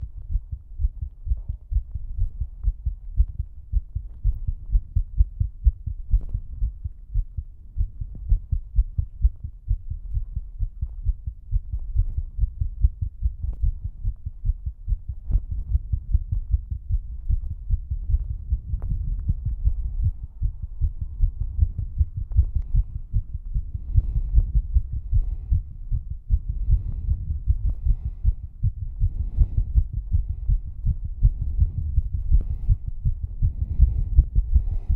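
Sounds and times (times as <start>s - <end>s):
fast heartbeat thuds: 0.0s - 34.9s.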